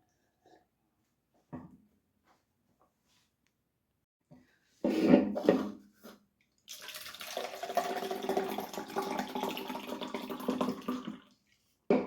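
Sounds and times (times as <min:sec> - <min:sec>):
liquid pouring into cup: 0:06.7 - 0:11.4.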